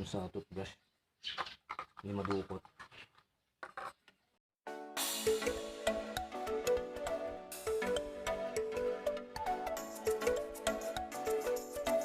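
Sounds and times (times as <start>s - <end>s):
background music with beat: 4.8s - 12.0s.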